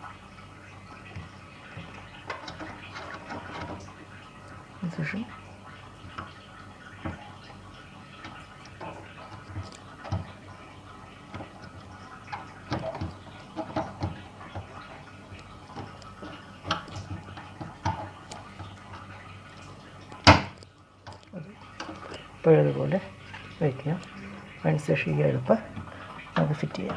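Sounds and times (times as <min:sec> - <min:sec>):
plastic parts clicking and knocking: 0:20.1 - 0:22.3.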